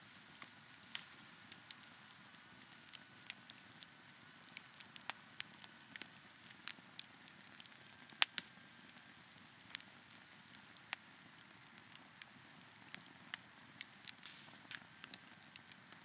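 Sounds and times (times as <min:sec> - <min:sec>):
campfire crackling and popping: 0:00.1 - 0:16.0
hiss of burning: 0:11.8 - 0:15.7.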